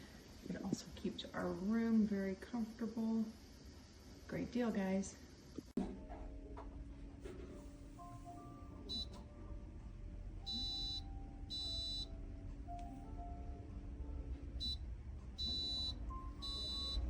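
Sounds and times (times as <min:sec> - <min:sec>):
soft background music: 0:05.8 - 0:17.0
electronic beeping: 0:08.8 - 0:09.2, 0:10.4 - 0:12.1, 0:14.6 - 0:14.8, 0:15.4 - 0:17.0.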